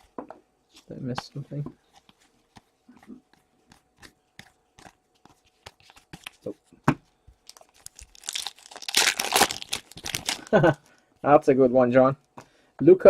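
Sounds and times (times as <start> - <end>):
wrapper crinkling and tearing: 7.4 - 10.8.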